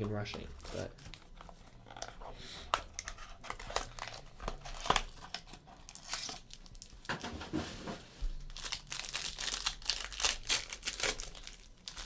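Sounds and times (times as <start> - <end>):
wrapper tearing and crinkling: 2.8 - 7.3, 8.4 - 12.0.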